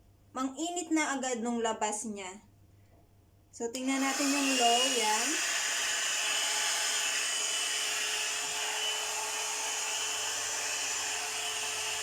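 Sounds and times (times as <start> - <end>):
hot-air styler blowing: 4.0 - 12.0
motor whine: 4.0 - 12.0.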